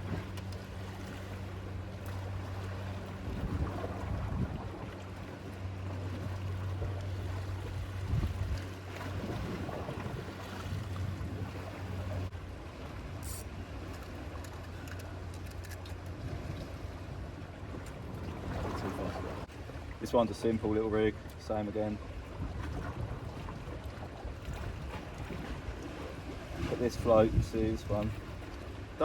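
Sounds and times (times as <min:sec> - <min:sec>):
waves washing against breakwater: 0:00.0 - 0:29.0
wind buffeting microphone: 0:03.1 - 0:05.1, 0:07.6 - 0:12.3, 0:22.3 - 0:28.4.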